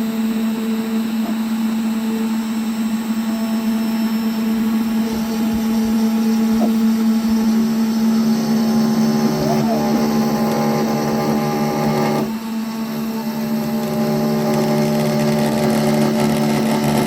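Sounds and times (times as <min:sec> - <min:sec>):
spindle humming: 0:00.0 - 0:17.0
stepper motors whining: 0:00.9 - 0:17.0.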